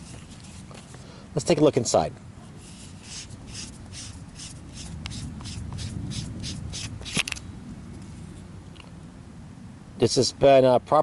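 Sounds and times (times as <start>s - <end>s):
threads rasping: 2.6s - 7.4s
flashlight cap click: 7.0s - 7.4s.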